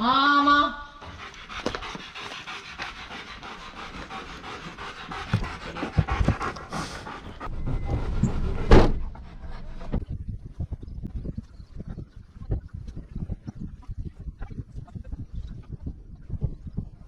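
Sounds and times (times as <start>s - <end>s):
dog panting: 1.0s - 8.6s.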